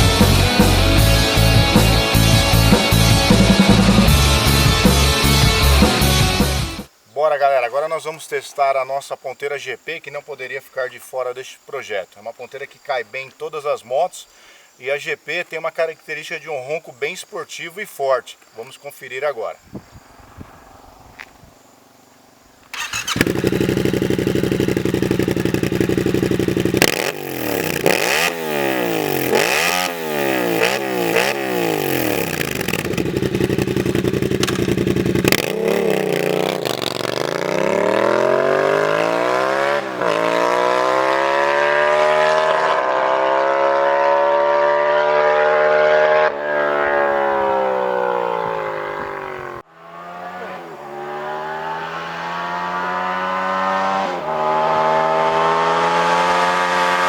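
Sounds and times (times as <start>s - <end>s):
motorcycle engine revving: 0.0s - 6.9s, 22.7s - 57.0s.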